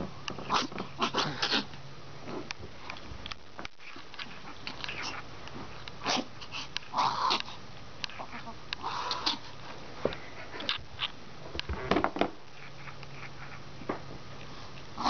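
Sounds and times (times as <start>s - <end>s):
dog coughing: 0.5s - 1.7s.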